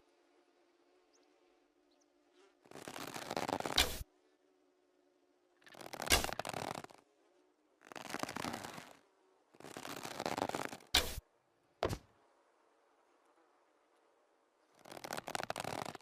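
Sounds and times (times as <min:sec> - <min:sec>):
arrows rasping scrapes: 0:02.7 - 0:04.0, 0:05.7 - 0:07.0, 0:09.7 - 0:11.2.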